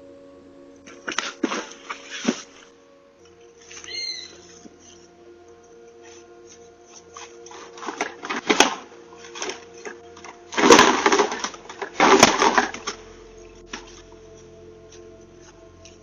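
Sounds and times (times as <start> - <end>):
faint steady hum: 0.0 - 16.0
clattering and rattling: 7.7 - 13.0.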